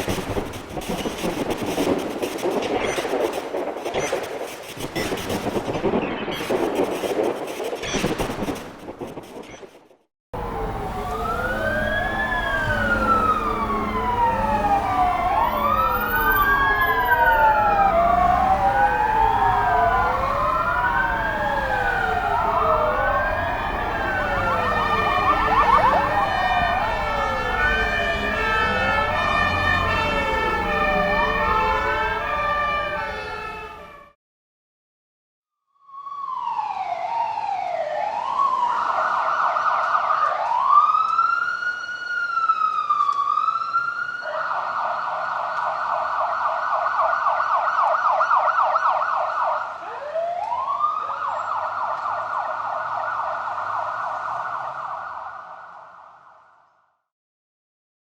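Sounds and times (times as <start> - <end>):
emergency sirens wailing: 10.4 - 34.2, 35.9 - 56.6.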